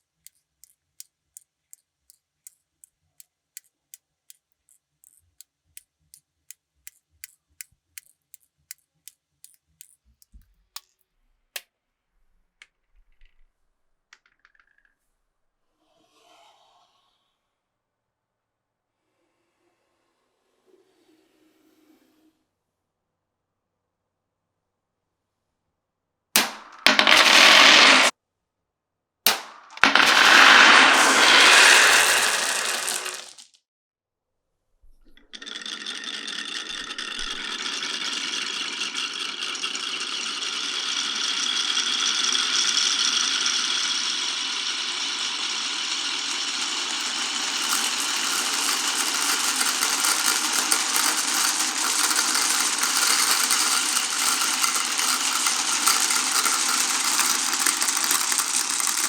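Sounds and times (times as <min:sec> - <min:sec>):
marbles clattering down wooden run: 0:26.4 - 0:28.1, 0:29.3 - 0:33.5, 0:35.2 - 0:59.0.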